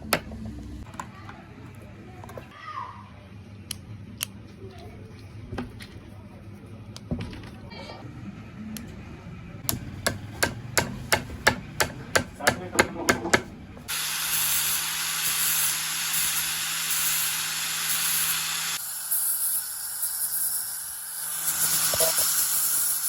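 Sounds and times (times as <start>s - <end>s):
hammer tapping on metal: 9.6s - 13.5s
small power tool running: 13.9s - 23.0s.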